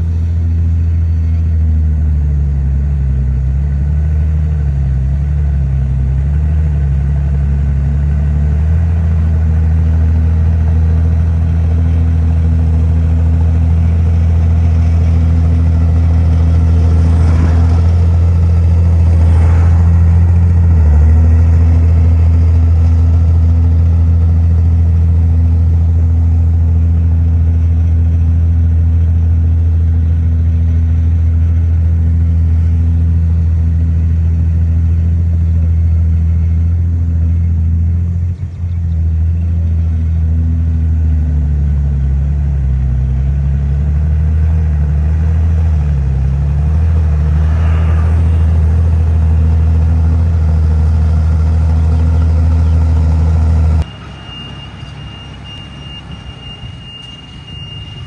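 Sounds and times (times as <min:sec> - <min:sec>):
heavy diesel engine running: 0:00.0 - 0:58.0
rushing noise: 0:15.8 - 0:22.0, 0:46.2 - 0:51.1.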